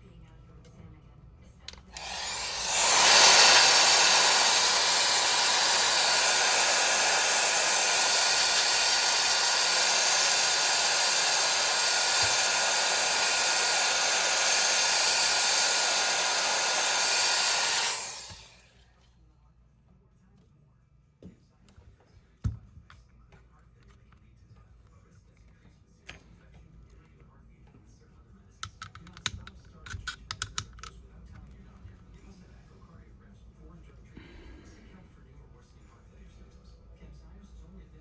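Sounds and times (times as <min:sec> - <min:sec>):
hot-air blower hissing: 0:01.8 - 0:18.7.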